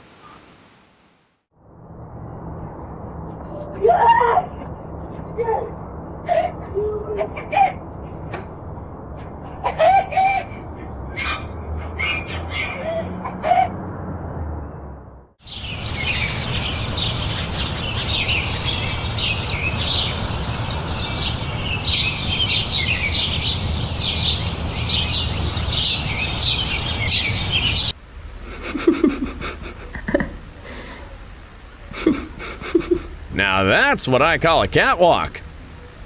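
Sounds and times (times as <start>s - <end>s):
small birds chirping: 15.4s - 28.0s.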